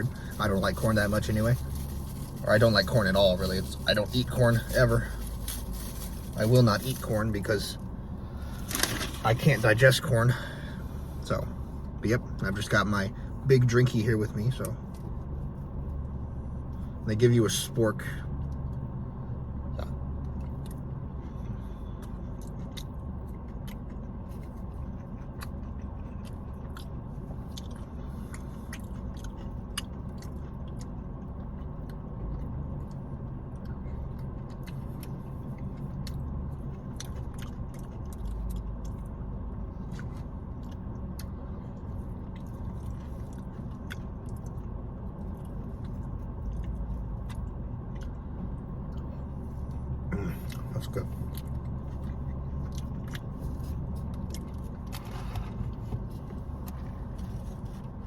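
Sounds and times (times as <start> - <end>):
steady low hum: 0.0 - 58.0
chewing and biting food: 19.8 - 58.0.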